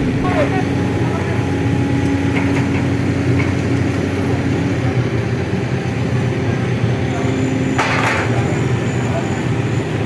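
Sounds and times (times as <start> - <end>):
diesel engine running: 0.0 - 10.0.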